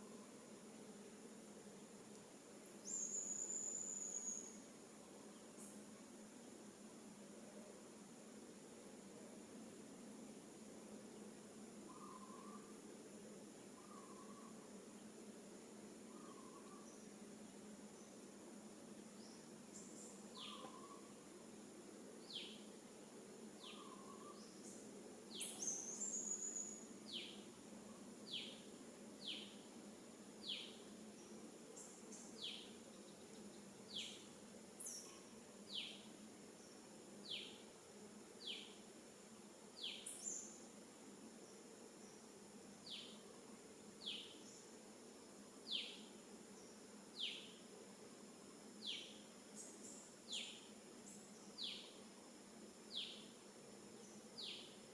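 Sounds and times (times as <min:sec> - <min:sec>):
insect drone: 0:00.0 - 0:54.9
bird chirping: 0:02.7 - 0:04.6, 0:11.9 - 0:12.7, 0:13.8 - 0:14.5, 0:19.2 - 0:21.1, 0:23.6 - 0:27.4.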